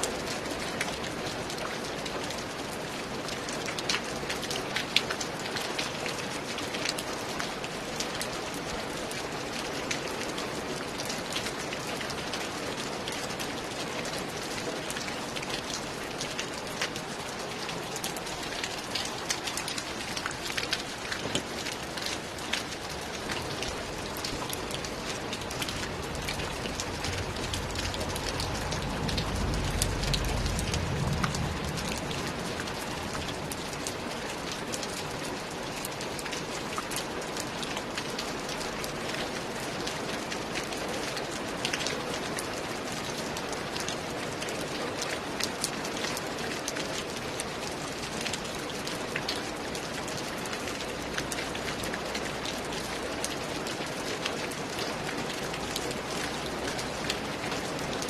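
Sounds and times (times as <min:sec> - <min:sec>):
raindrops striking close by: 0:00.0 - 0:58.0
steady rain: 0:00.0 - 0:58.0
low rumble: 0:25.8 - 0:33.7.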